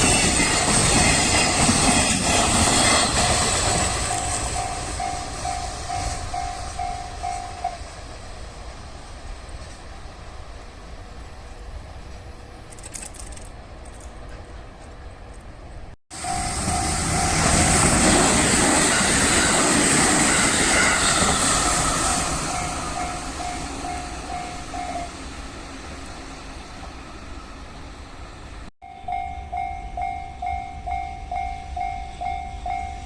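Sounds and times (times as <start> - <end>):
train wheels on rails: 0.0 - 33.0
crossing warning bell ringing: 3.6 - 7.9, 16.1 - 25.4, 28.8 - 33.0.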